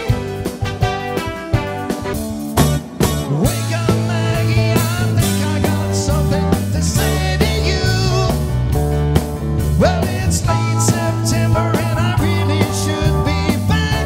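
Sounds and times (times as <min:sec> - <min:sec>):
lead guitar bending notes: 0:00.0 - 0:08.3
rock band playing: 0:00.0 - 0:14.0.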